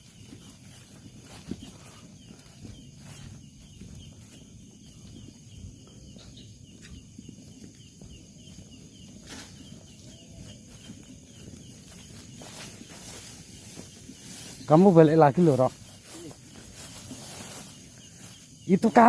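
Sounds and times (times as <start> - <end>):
footsteps scuffing and rustling: 0.0 - 19.0.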